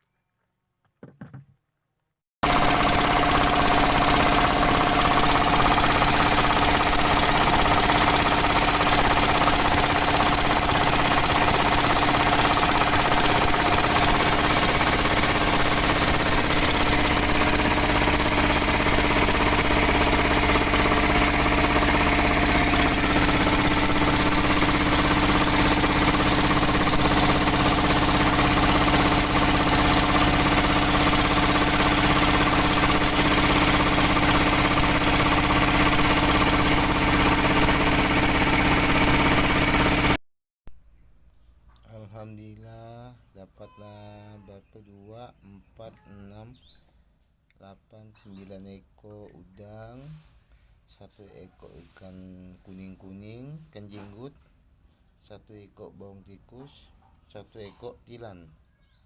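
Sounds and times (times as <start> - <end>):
boat engine chugging: 2.4 - 40.2.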